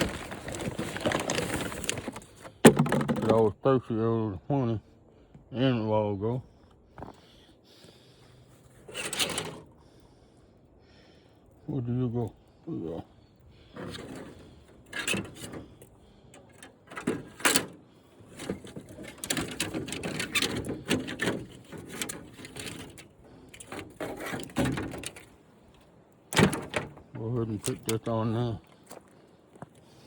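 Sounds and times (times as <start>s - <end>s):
tv parts knocking and clattering: 0.0s - 3.5s.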